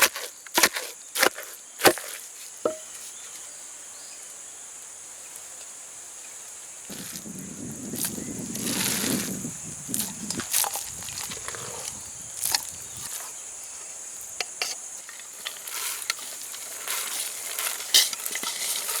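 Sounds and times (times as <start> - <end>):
chopping strikes on wood: 0.0 - 2.9
insects chirring: 0.0 - 19.0
rough rustling noise: 6.9 - 13.9, 15.1 - 19.0.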